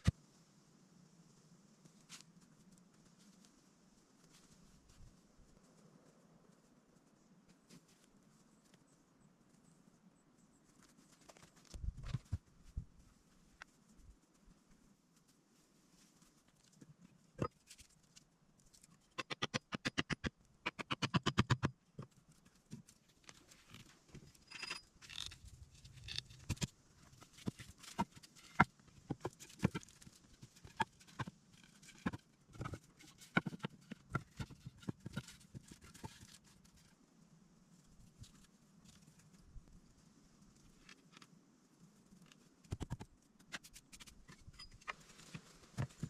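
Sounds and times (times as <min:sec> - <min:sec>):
knocks and snaps: 0:19.1 - 0:22.1.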